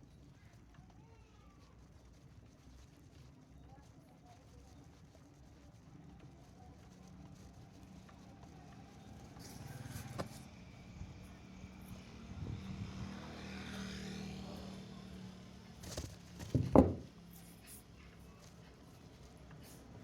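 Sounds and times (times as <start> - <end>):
vehicle passing: 12.1 - 16.4
loud thump: 16.4 - 17.1.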